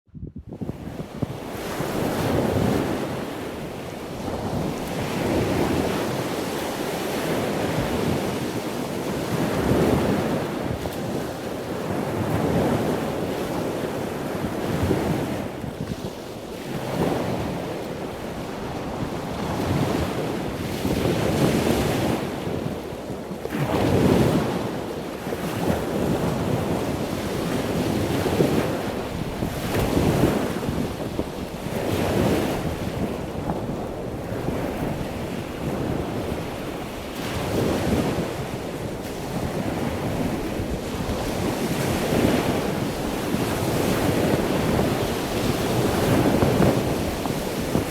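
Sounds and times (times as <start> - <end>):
ocean waves washing in: 23.6 - 47.9.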